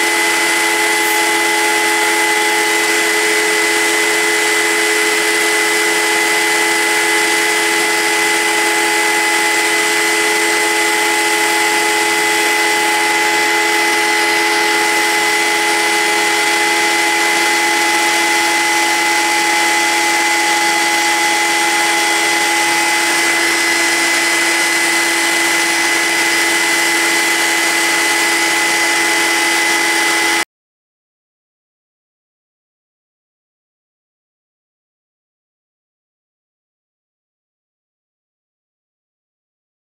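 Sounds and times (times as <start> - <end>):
router spindle whining: 0.0 - 30.4.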